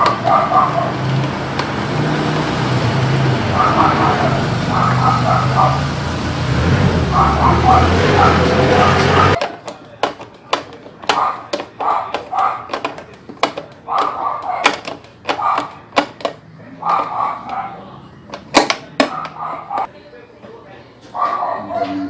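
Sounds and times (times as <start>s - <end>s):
plastic parts clicking and knocking: 0.0s - 4.1s, 7.7s - 19.9s.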